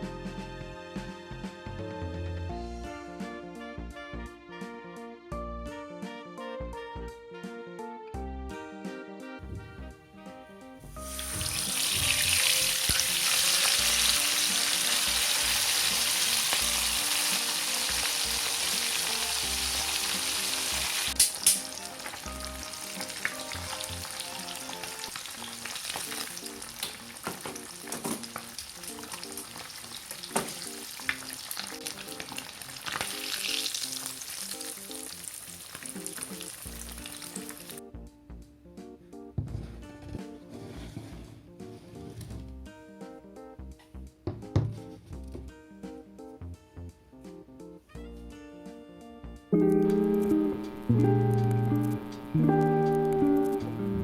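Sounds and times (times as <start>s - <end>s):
food sizzling in oil: 11.0s - 37.8s.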